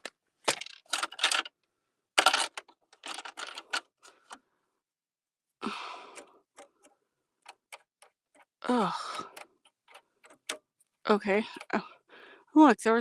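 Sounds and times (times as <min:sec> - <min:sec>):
plastic and metal parts clattering: 0:00.0 - 0:01.6, 0:02.2 - 0:04.4.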